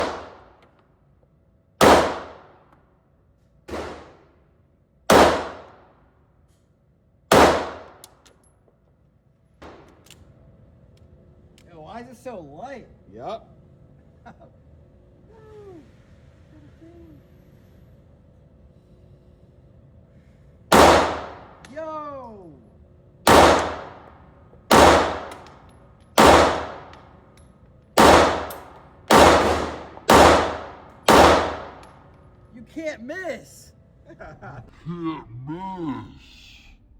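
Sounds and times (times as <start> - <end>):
pistol shots with echo: 0.0 - 0.5, 1.8 - 2.6, 3.7 - 4.2, 5.1 - 5.9, 7.3 - 8.1, 20.7 - 21.6, 23.3 - 24.1, 24.7 - 25.6, 26.2 - 27.0, 28.0 - 32.0.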